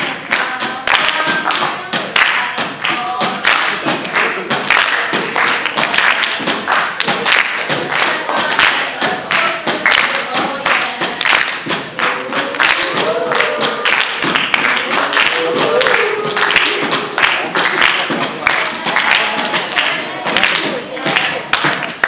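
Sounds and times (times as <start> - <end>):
percussion on everyday objects: 0.0 - 22.0
voices: 12.0 - 22.0.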